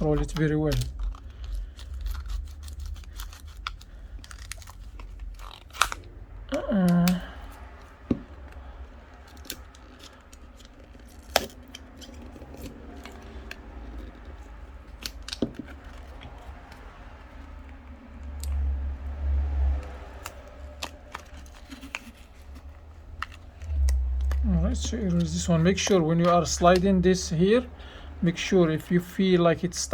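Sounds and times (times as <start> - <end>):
low handling rumble: 0.0 - 29.9
plastic pry tool scraping and clicking: 15.0 - 16.8.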